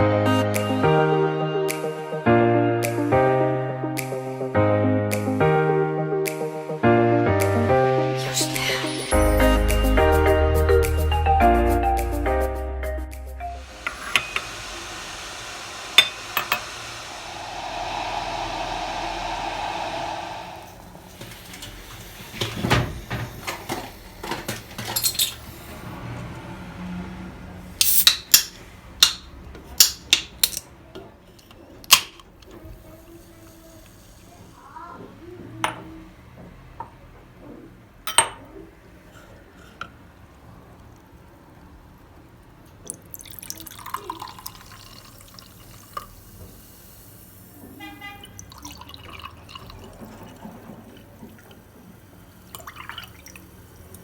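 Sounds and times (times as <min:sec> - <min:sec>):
steady rushing noise: 0:13.6 - 0:22.1
dishes clinking: 0:38.1 - 0:38.6.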